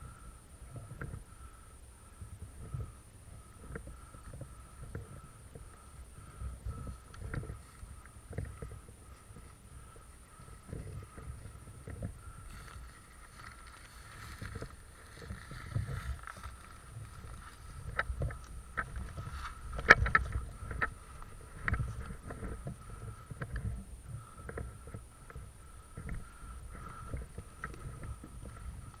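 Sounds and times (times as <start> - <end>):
low rumbling noise: 0.0 - 29.0
sharp clicks and knocks: 17.8 - 23.7.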